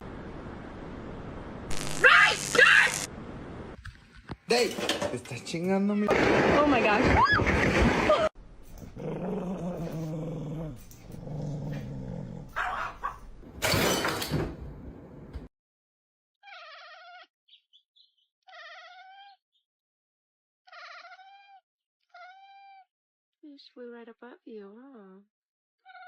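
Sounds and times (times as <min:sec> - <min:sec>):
cat meowing: 0:18.5 - 0:19.3, 0:20.7 - 0:22.8
cat chirps: 0:20.7 - 0:22.8.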